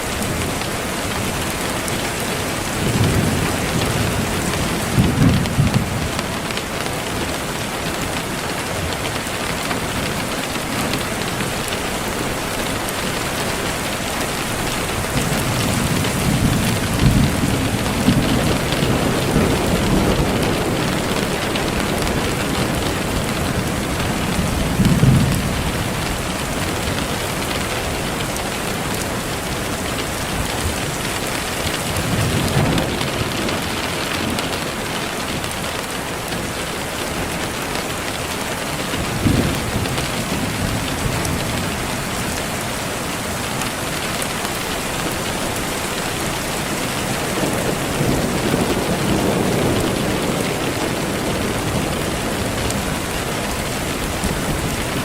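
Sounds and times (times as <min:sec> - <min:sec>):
heavy rain: 0:00.0 - 0:55.0
low thunder rumbles: 0:00.1 - 0:10.2, 0:14.5 - 0:38.2, 0:38.8 - 0:43.1, 0:46.4 - 0:55.0.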